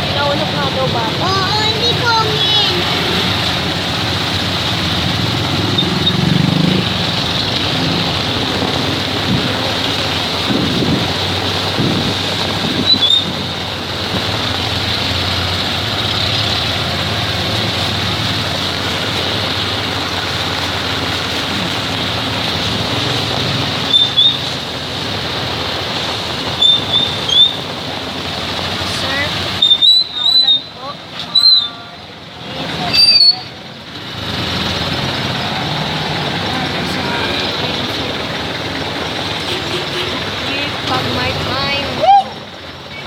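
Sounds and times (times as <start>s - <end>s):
heavy rain falling: 0.0s - 43.0s
short high squeaks: 29.6s - 31.8s, 32.9s - 33.6s.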